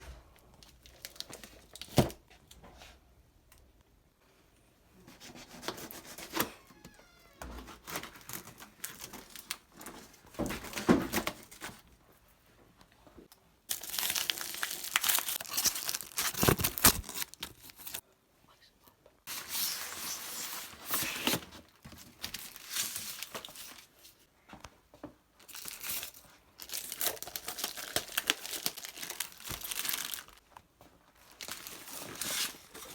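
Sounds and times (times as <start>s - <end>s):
packaging rustling and crinkling: 0.6s - 2.2s, 7.6s - 11.8s, 13.7s - 18.0s, 19.3s - 24.3s, 25.4s - 30.5s, 31.1s - 32.9s.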